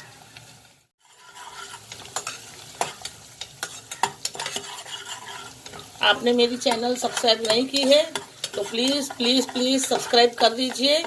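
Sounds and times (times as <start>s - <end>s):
spices sizzling in hot oil: 0.0s - 11.0s.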